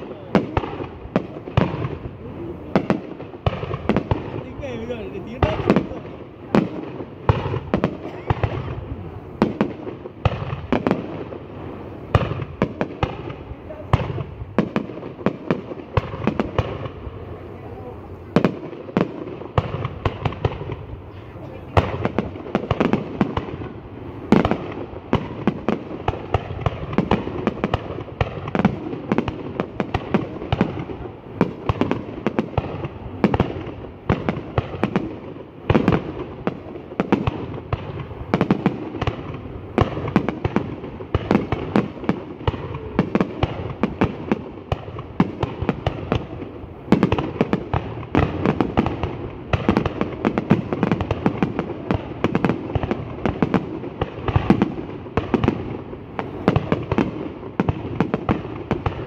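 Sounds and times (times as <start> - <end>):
firework bangs: 0.0 - 59.0
loud firework booms: 0.0 - 59.0.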